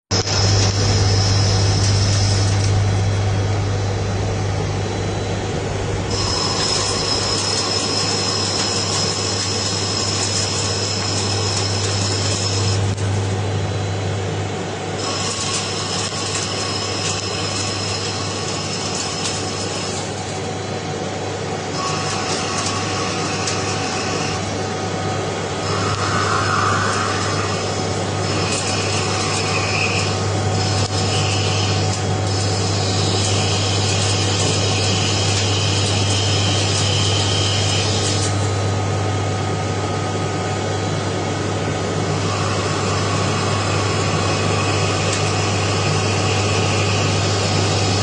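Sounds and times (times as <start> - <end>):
cutting whine and hiss: 0.2 - 13.8, 21.7 - 38.4
lathe humming: 0.2 - 13.8, 21.7 - 38.2.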